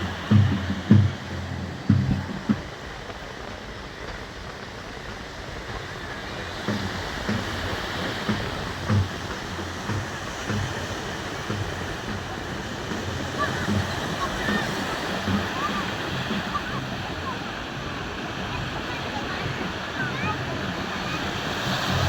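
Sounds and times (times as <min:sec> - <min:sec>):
faint low thuds: 0:00.0 - 0:02.8
sea surf washing on shore: 0:00.0 - 0:22.0.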